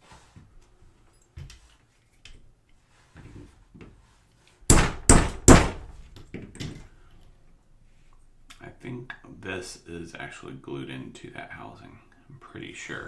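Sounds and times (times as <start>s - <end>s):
loud sharp knocks: 4.7s - 6.0s.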